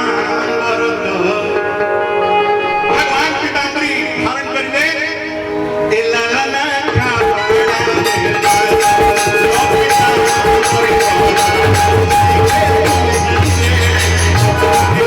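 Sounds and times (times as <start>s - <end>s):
long held instrumental notes: 6.9s - 15.0s
fast percussion beat: 7.0s - 15.0s.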